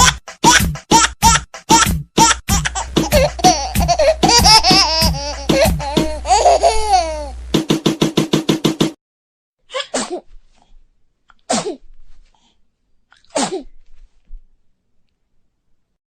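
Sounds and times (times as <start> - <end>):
child sneezing: 9.7 - 10.3, 11.5 - 11.9, 13.2 - 13.7.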